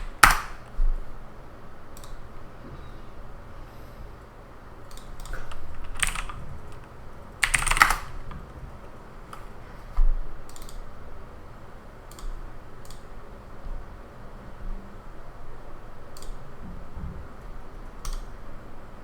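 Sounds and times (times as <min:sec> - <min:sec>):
typing on computer keyboard: 0:00.0 - 0:00.7, 0:04.9 - 0:08.3, 0:10.5 - 0:10.8.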